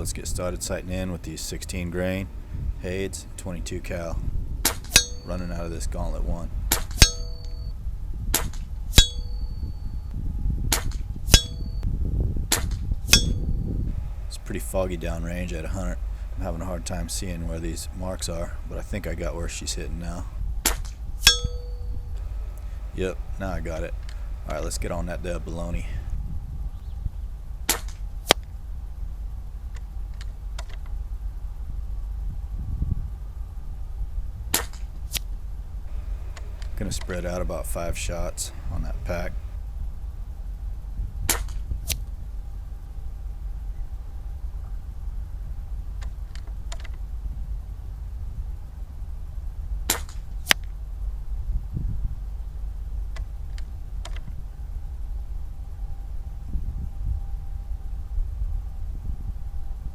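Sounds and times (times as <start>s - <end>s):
wind rumble on microphone: 0.0s - 27.7s, 31.7s - 34.6s, 35.9s - 39.6s, 51.0s - 59.9s
sharp crack: 5.9s - 7.2s
air rifle shots: 22.2s - 26.2s, 35.9s - 39.6s
light clicks: 22.2s - 26.2s.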